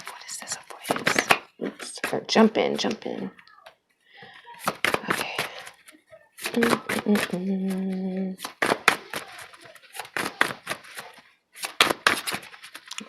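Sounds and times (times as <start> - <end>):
tarot cards shuffling: 0.0 - 3.4, 4.6 - 13.0
person humming: 6.5 - 8.4.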